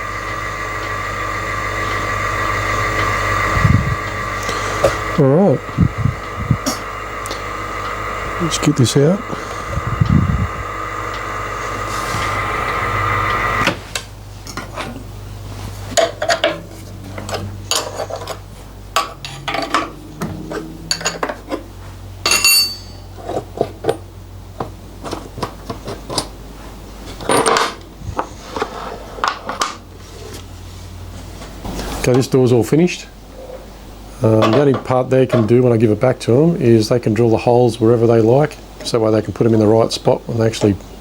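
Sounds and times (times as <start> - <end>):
milling machine humming: 0.0 - 13.8, 15.9 - 23.4
metal clinks and clanks: 22.2 - 23.2
ringing metal clank: 22.2 - 23.2.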